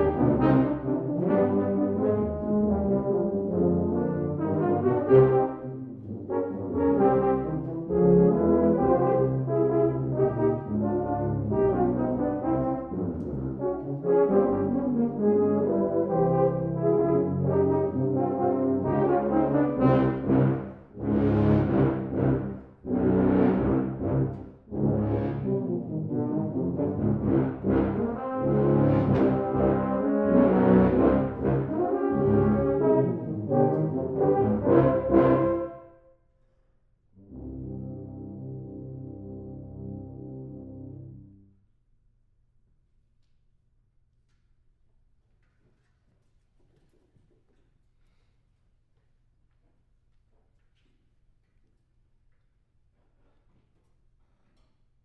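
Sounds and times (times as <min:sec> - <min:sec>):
tuba and euphonium ensemble: 0:00.0 - 0:36.1, 0:37.2 - 0:41.6.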